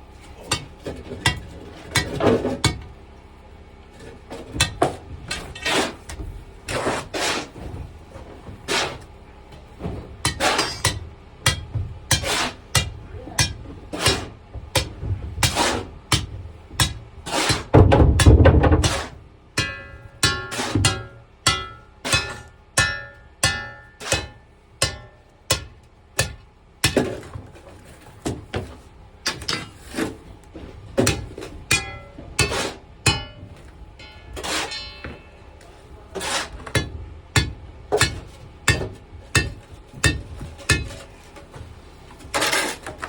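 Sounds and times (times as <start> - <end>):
metal striking metal with ringing: 19.6 - 27.0, 31.1 - 36.0, 36.7 - 41.0.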